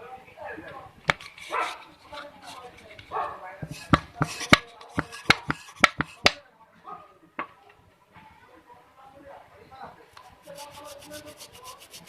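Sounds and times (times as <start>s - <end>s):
quiet handling: 0.7s - 6.4s
small tools tapping and clicking: 1.1s - 6.4s.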